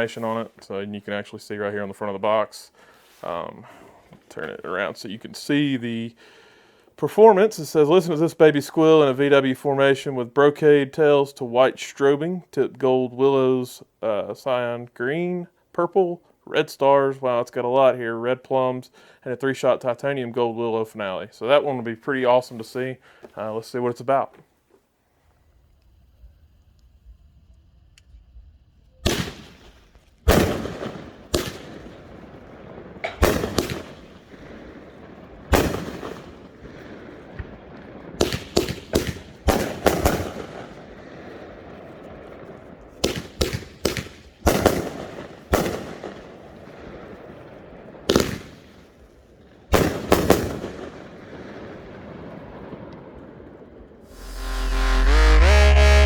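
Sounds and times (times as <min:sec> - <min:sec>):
firework reports: 0:00.0 - 0:03.6, 0:29.0 - 0:47.2, 0:54.1 - 0:56.0.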